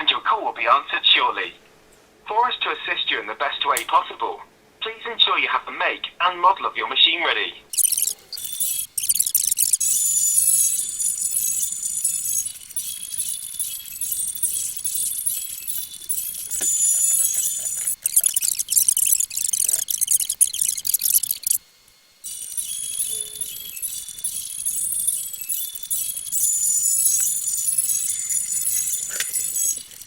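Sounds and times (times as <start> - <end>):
telephone hold music: 7.7 - 30.0.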